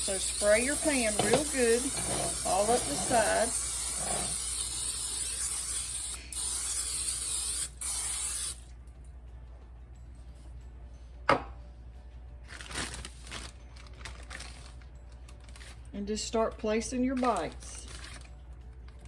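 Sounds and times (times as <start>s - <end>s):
aerosol spray hissing: 0.0s - 8.6s.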